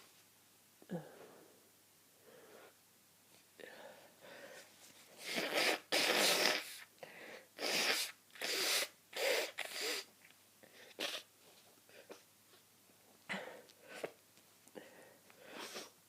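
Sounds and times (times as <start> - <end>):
person clearing stuffed nose: 5.2 - 6.9, 7.6 - 10.1, 10.8 - 11.3
person sneezing: 5.2 - 6.9, 7.6 - 10.1.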